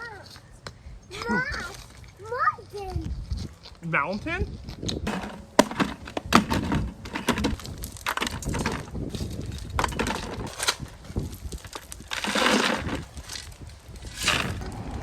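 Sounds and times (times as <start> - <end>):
gritty scrape: 4.5 - 15.0
concrete chunks crunching and clattering: 4.6 - 15.0.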